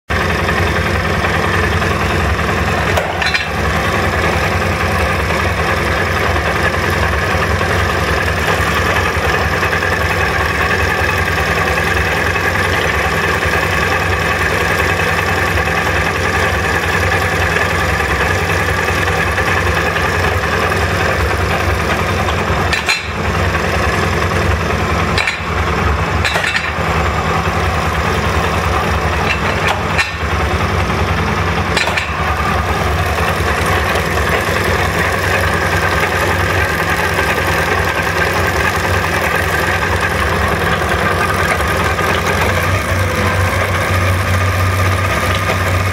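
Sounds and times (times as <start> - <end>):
motorcycle engine idling: 0.1 - 45.9.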